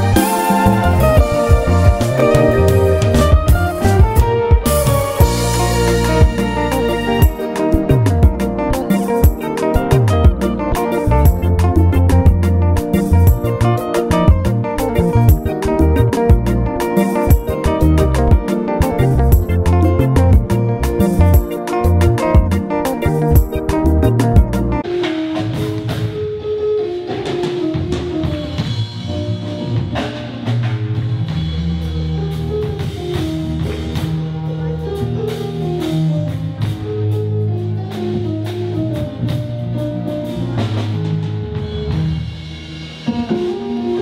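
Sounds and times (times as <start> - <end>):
bass line: 0.0 - 24.8
melody of held notes: 0.0 - 27.2
drum kit beat: 0.0 - 44.0.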